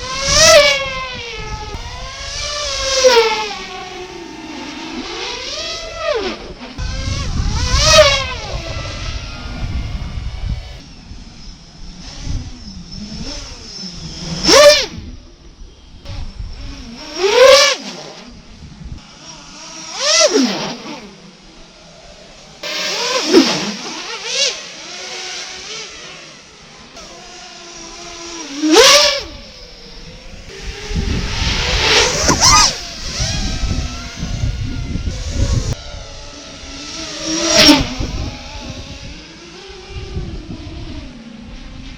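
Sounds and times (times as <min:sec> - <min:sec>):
quadcopter motors whining: 0:00.0 - 0:41.9
low rumbling noise: 0:05.8 - 0:17.2.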